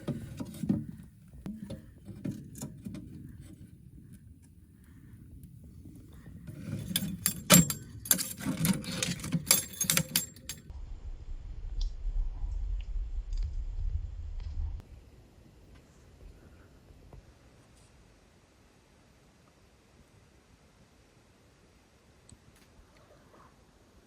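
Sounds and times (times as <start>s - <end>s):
light metal clinking and rattling: 6.5s - 10.7s
low rumble: 10.7s - 15.1s.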